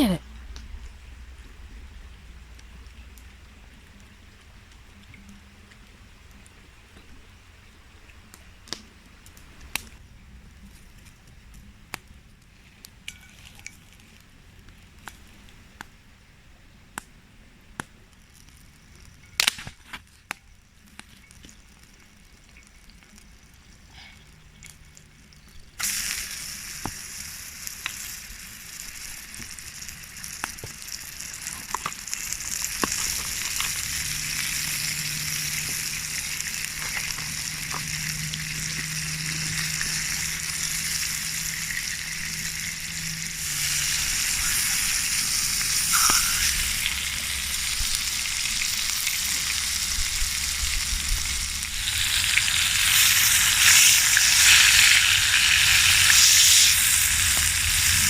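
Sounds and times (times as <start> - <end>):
steak sizzling in a pan: 25.8 - 58.0.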